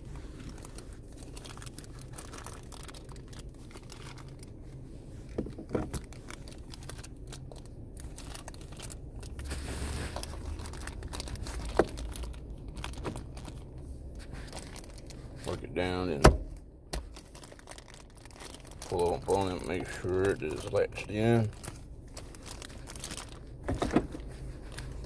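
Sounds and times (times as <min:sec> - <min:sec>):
plastic rustling and crinkling: 0:00.0 - 0:25.0.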